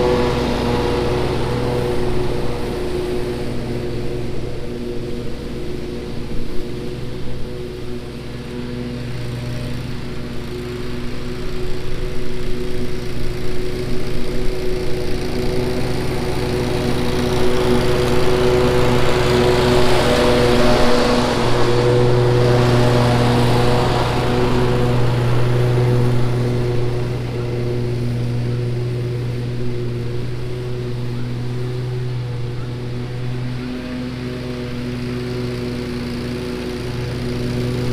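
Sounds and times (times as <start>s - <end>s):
lawn mower engine hum: 0.0s - 37.9s
mower blades hissing: 0.0s - 37.9s.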